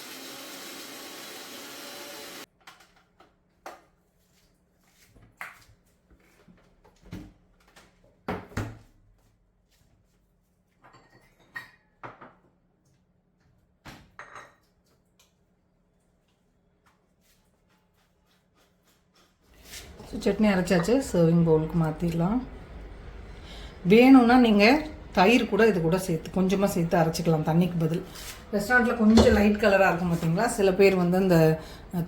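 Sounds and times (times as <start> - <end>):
electric mixer grinder running: 0.0 - 2.5
kitchenware knocking and clinking: 28.8 - 29.8.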